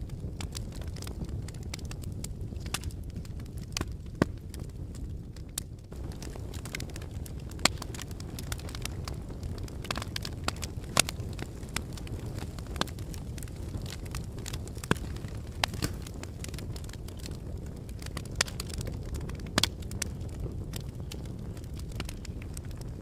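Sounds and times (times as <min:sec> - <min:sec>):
lava cracks and clinks: 0:00.0 - 0:23.0
lava low rumble: 0:00.0 - 0:23.0.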